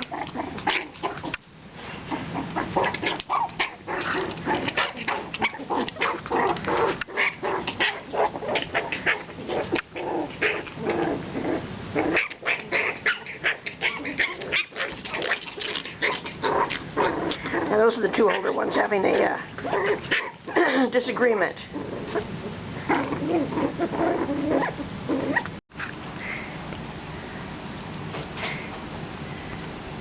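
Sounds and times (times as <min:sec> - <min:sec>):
puppies yipping and barking: 0:02.0 - 0:10.9, 0:12.0 - 0:20.8.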